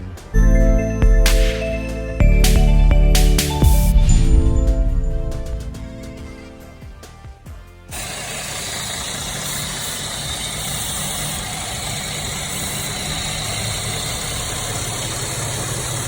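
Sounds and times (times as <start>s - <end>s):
music: 0.0s - 8.1s
car engine idling: 8.0s - 16.0s.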